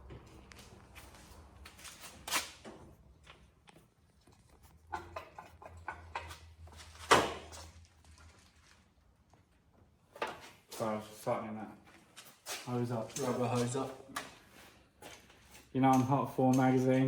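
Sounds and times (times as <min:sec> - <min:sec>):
hand tools clicking and knocking: 0:04.9 - 0:06.5, 0:15.8 - 0:16.9.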